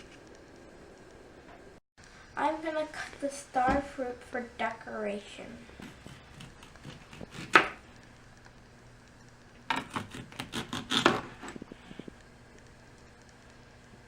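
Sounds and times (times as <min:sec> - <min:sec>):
knife cutting on cutting board: 0:05.8 - 0:07.8, 0:09.7 - 0:11.6.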